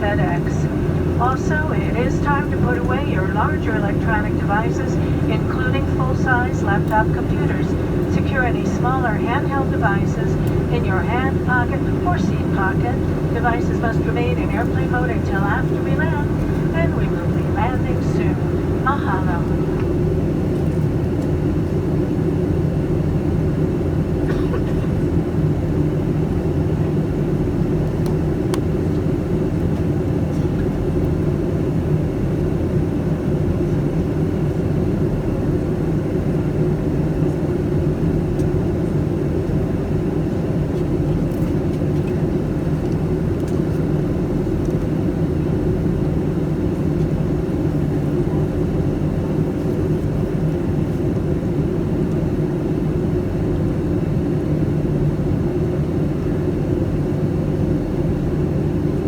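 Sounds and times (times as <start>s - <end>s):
airliner cabin engine rumble: 0.0s - 59.0s.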